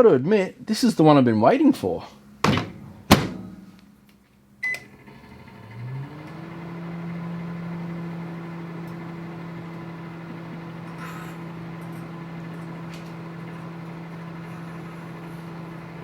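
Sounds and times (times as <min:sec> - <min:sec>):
microwave running hum: 0:00.8 - 0:16.0
microwave clicks: 0:02.4 - 0:03.6.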